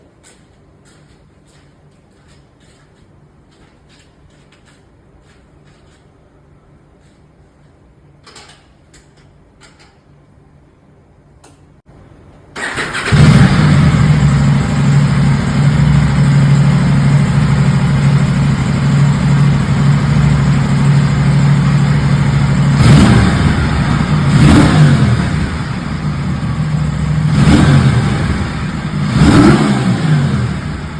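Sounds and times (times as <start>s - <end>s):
motorcycle engine idling and revving: 12.6s - 30.9s.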